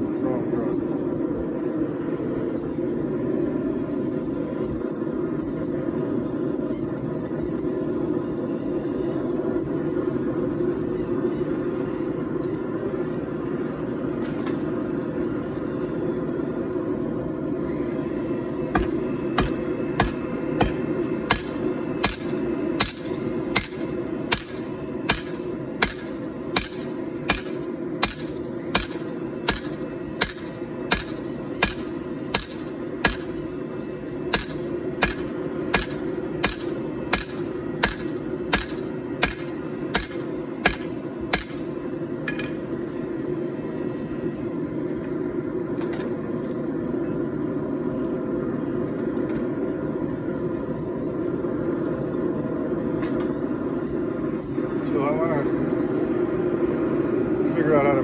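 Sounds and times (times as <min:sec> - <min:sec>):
hammer striking steel on anvil: 0:18.7 - 0:33.5, 0:34.3 - 0:41.7.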